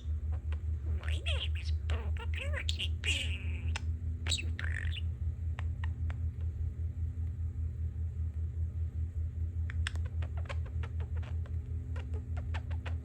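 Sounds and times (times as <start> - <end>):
pulsing construction rumble: 0.0 - 13.0
budgerigar chirping: 0.9 - 5.1.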